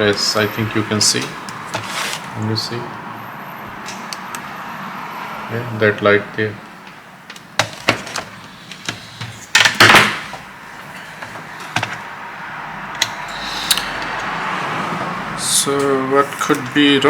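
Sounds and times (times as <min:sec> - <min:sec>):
handling clicks and knocks: 0:00.8 - 0:02.5, 0:06.6 - 0:12.2, 0:12.9 - 0:17.0.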